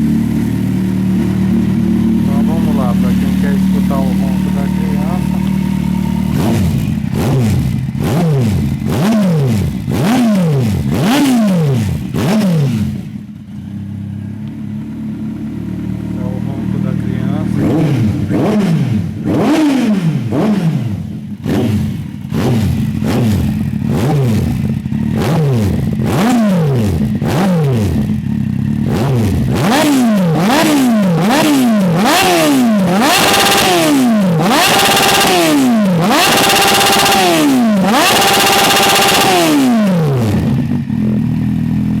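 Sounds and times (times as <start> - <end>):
motorcycle engine revving: 0.0 - 42.0.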